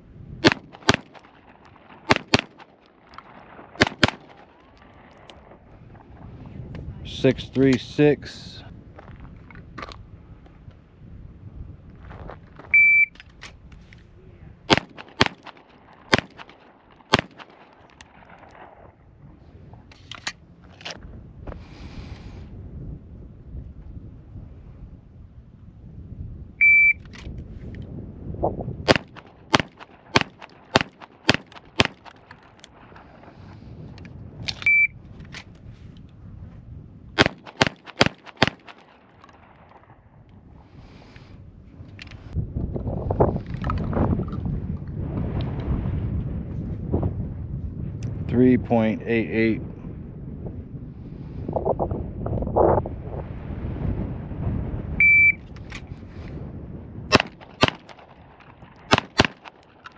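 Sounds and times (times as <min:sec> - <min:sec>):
pistol shots: 0:00.4 - 0:05.1, 0:14.7 - 0:18.7, 0:28.9 - 0:32.2, 0:37.2 - 0:39.9, 0:57.1 - 0:58.2, 0:58.8 - 0:59.9
shot timer beep: 0:12.8 - 0:13.2, 0:26.6 - 0:27.0, 0:34.7 - 0:35.0, 0:55.0 - 0:55.4.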